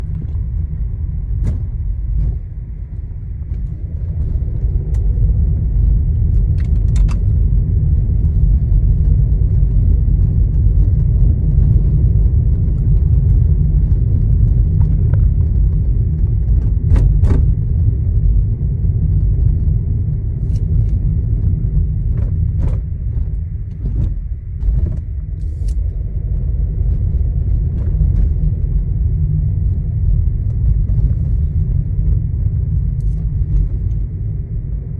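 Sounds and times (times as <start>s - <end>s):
car road rumble: 0.0s - 34.9s
interior trim rattling clicks: 6.3s - 7.3s, 20.4s - 21.0s.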